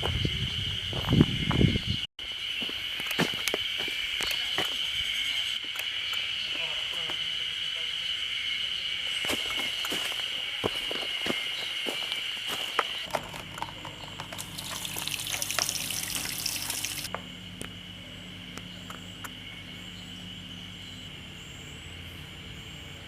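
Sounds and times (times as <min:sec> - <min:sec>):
water running: 0:14.3 - 0:17.1.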